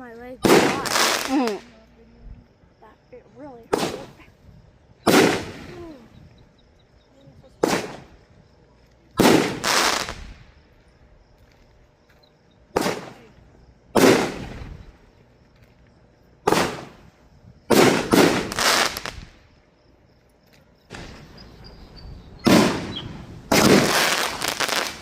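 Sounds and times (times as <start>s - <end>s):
fireworks bangs with echo: 0.4s - 1.7s, 3.7s - 4.2s, 5.0s - 5.8s, 7.6s - 8.1s, 9.2s - 10.5s, 12.7s - 13.3s, 13.9s - 14.9s, 16.4s - 17.1s, 17.7s - 19.4s, 20.9s - 25.0s.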